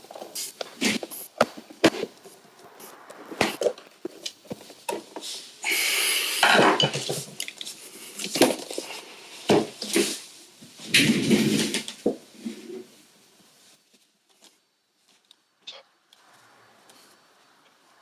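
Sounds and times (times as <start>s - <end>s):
noisy scrape: 0.1s - 5.6s.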